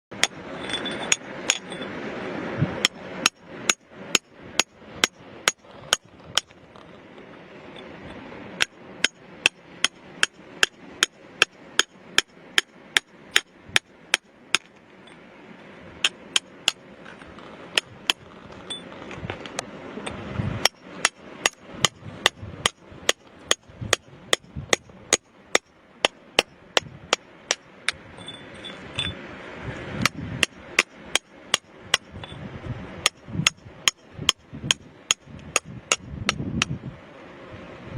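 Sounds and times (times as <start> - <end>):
hammer striking rock: 2.8 - 6.6, 8.6 - 14.7, 20.6 - 28.0, 33.0 - 36.8.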